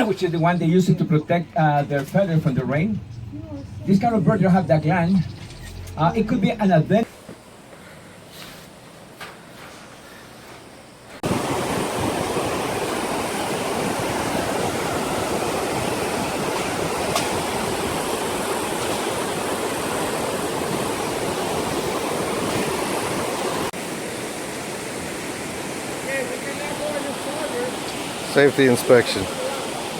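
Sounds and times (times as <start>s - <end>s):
rushing water: 11.2s - 29.9s.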